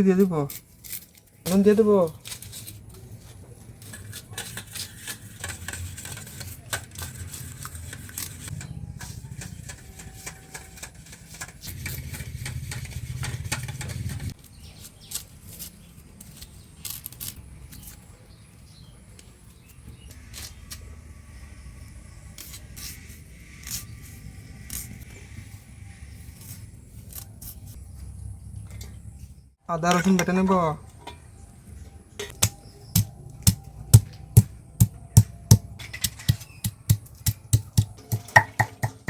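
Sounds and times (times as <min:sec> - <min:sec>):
utensil clicks and scrapes: 0:00.4 - 0:18.1, 0:22.3 - 0:27.8
low rumble: 0:08.4 - 0:14.4.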